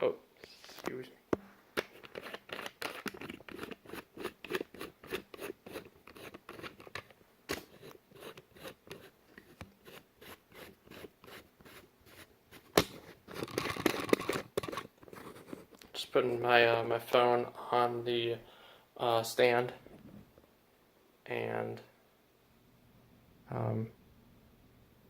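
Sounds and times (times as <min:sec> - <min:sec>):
small handling clicks and scrapes: 0:01.8 - 0:15.9.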